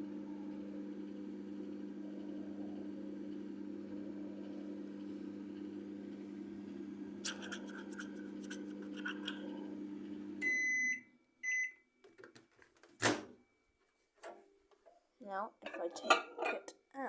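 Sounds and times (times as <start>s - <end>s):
microwave oven humming: 0.0s - 12.2s
microwave timer beeps: 10.4s - 11.9s.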